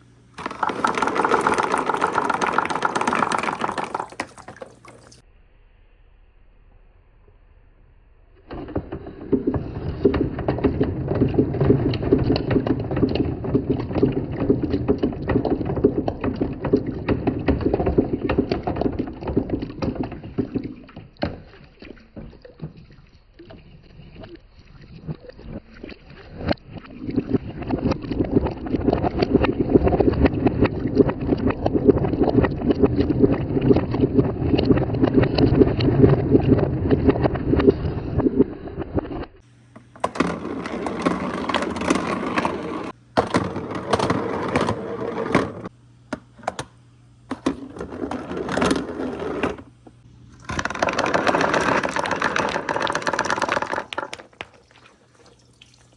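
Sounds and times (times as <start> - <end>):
balls rolling on wooden track: 0.4 - 5.2, 8.5 - 21.5, 27.3 - 46.7, 47.3 - 49.7, 50.4 - 55.3.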